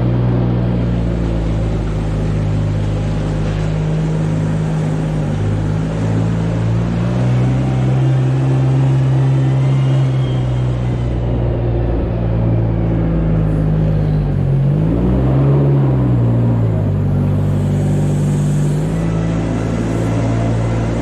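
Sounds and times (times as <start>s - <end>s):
engine running steadily: 0.0s - 21.0s.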